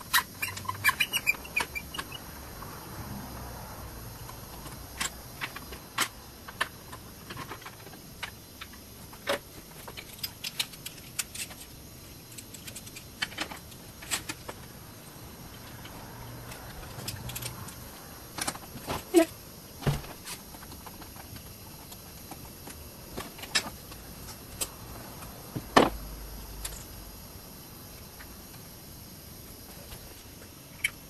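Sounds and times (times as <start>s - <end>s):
hand tools clicking and tapping: 15.6s - 17.8s.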